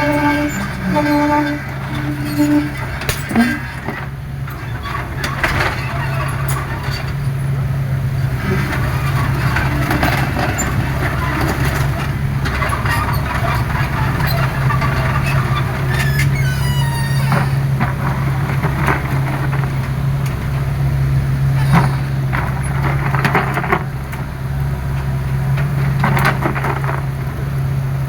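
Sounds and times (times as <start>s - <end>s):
brief squeal: 0.0s - 3.9s, 12.6s - 17.8s, 21.5s - 22.8s
mechanical knocks: 0.0s - 4.1s
excavator diesel engine running: 0.0s - 28.0s.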